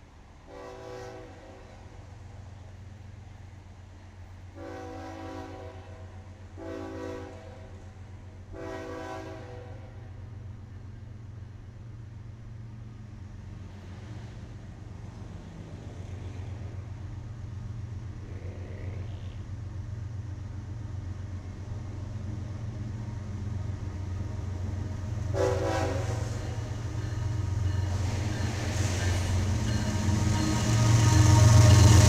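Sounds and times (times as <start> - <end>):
diesel locomotive engine hum: 0.0 - 32.0
train horn blast: 0.5 - 2.0, 4.5 - 10.2, 25.2 - 28.0, 28.9 - 32.0
wheel and rail noise: 9.8 - 32.0.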